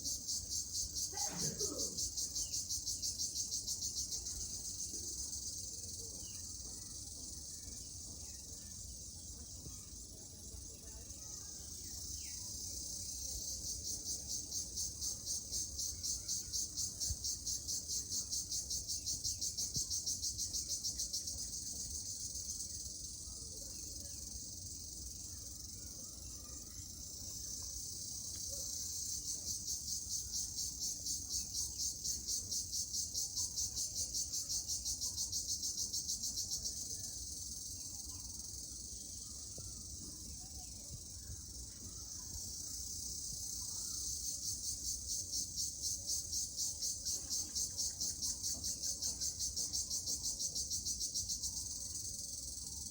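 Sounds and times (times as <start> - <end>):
cricket singing: 0.1 - 9.1, 24.4 - 52.9.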